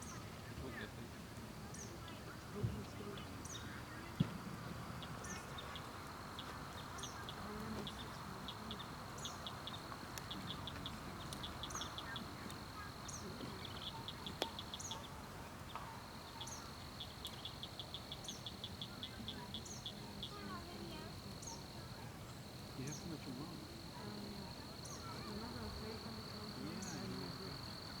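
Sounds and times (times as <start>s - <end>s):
insect trill: 3.2s - 28.0s
campfire pop: 4.1s - 19.9s.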